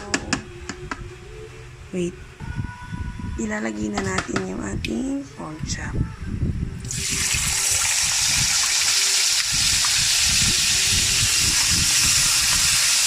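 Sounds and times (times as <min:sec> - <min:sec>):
meat sizzling in a pan: 0:06.9 - 0:13.0.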